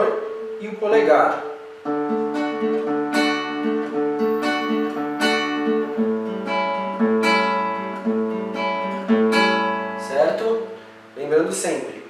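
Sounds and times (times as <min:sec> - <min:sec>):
fingerpicked acoustic guitar: 0:00.0 - 0:11.2.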